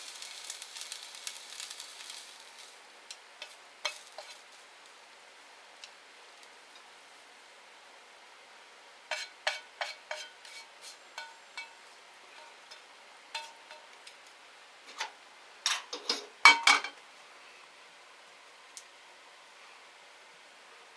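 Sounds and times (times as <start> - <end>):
utensils clinking on dishes: 9.1 - 11.8, 15.7 - 17.0.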